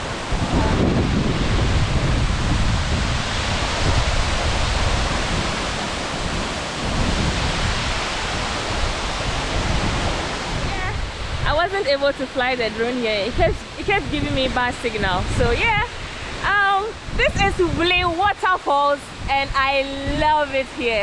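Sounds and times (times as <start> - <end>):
waterfall rushing onto rocks: 0.0 - 12.6.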